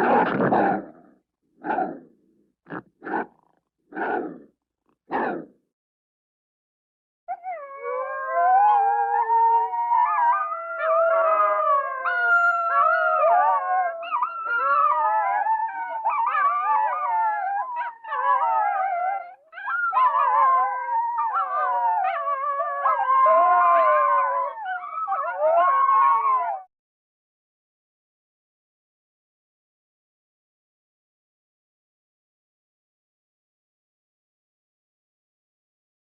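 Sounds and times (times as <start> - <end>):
wolves howling in chorus: 7.3 - 26.7.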